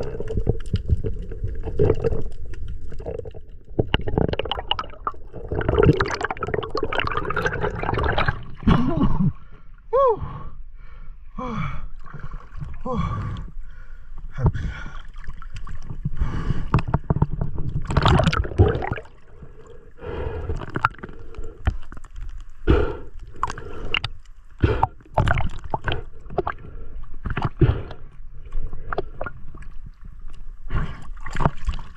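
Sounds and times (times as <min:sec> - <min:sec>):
water splashing and gurgling: 0:00.0 - 0:09.3, 0:14.4 - 0:31.9.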